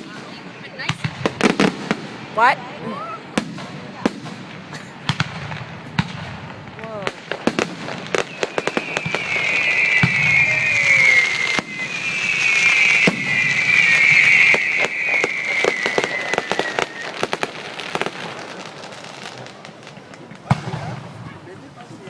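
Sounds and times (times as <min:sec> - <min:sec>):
firework cracks and pops: 0:00.0 - 0:02.2, 0:03.3 - 0:22.0
whistling firework shells: 0:07.1 - 0:21.1.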